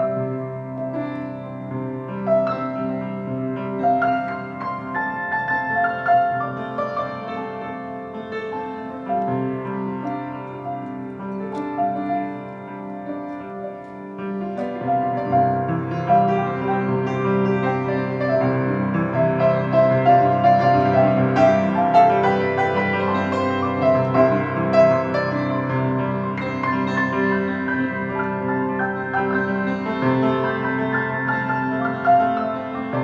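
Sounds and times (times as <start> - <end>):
slow solo piano piece: 0.0 - 33.0.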